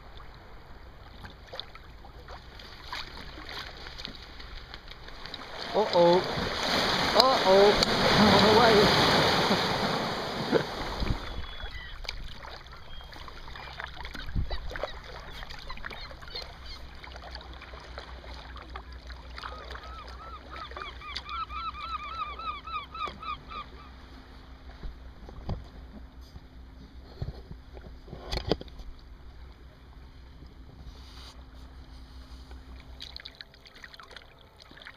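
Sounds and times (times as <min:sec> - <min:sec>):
paddle splashes and drips: 0:00.0 - 0:21.9, 0:27.7 - 0:34.9
bird honking call: 0:19.5 - 0:24.0.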